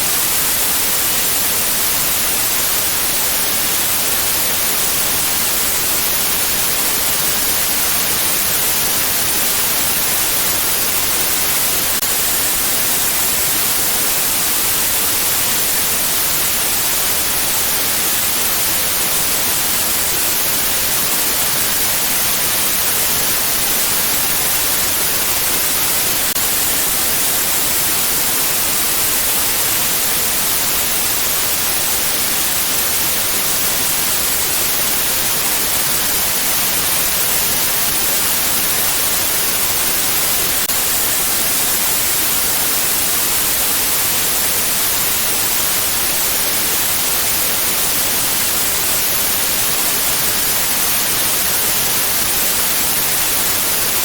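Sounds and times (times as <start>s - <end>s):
white noise hiss: 0.0s - 54.0s.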